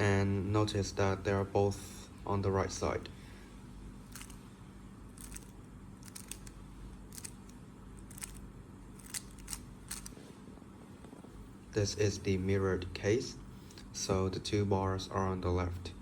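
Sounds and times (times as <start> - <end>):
faint steady hum: 0.0 - 16.0
puzzle cube plastic clicks: 4.1 - 4.4, 5.2 - 8.4, 9.0 - 10.1.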